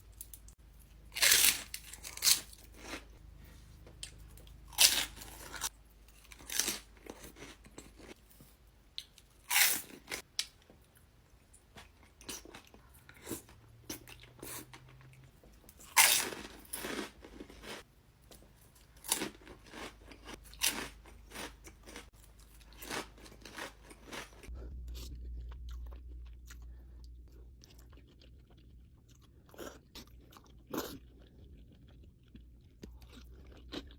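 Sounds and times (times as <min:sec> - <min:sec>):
crunchy bites: 0:19.0 - 0:26.7
wet chewing: 0:19.1 - 0:33.9.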